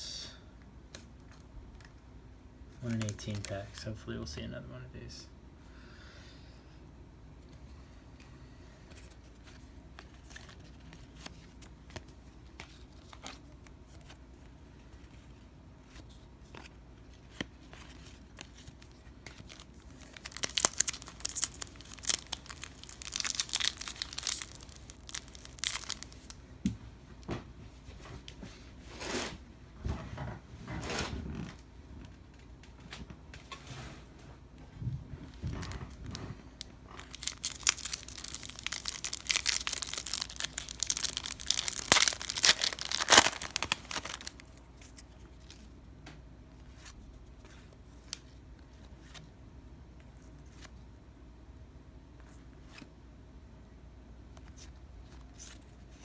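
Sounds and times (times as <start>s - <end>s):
wrapper tearing and crinkling: 17.8s - 26.4s, 37.0s - 45.7s.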